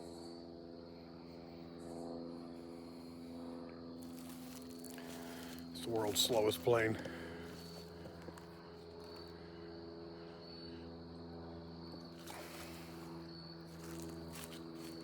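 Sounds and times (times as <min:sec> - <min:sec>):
light aircraft droning: 0:00.0 - 0:15.0
faint rustle: 0:04.0 - 0:06.4.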